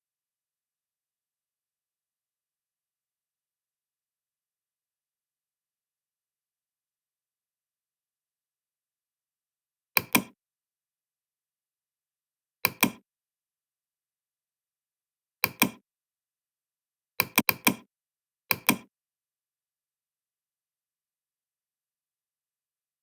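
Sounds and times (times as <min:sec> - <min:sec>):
sharp clicks: 0:12.7 - 0:13.0, 0:17.2 - 0:17.8.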